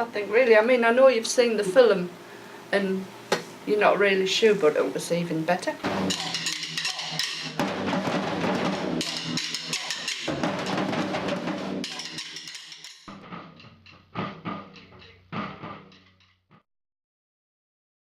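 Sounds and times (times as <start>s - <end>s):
drum-led music: 5.8s - 16.1s.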